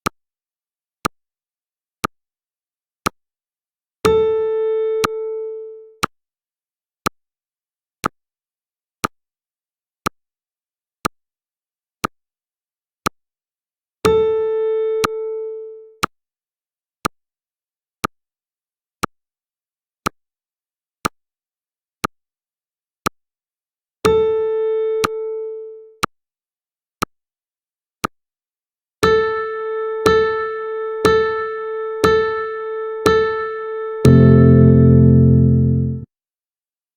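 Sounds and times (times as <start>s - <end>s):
electronic timer ticking: 34.0s - 36.0s
sustained electronic beep: 34.0s - 36.0s.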